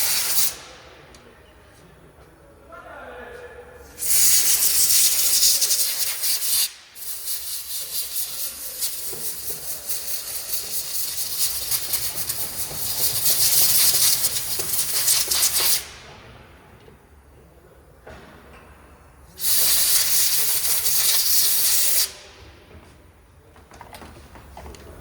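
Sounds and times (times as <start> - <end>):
pressurised jet hissing: 0.0 - 0.8, 4.0 - 16.0, 19.4 - 22.3.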